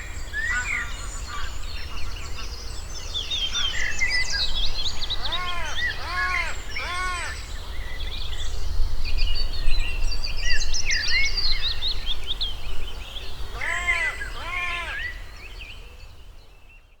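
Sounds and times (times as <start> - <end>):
songbirds chirping: 0.0 - 17.0
crow cawing: 5.2 - 7.5, 13.6 - 15.1.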